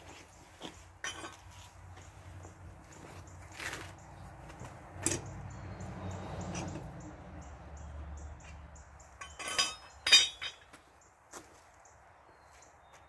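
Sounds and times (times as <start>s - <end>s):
loud metallic clanks: 9.2s - 10.6s.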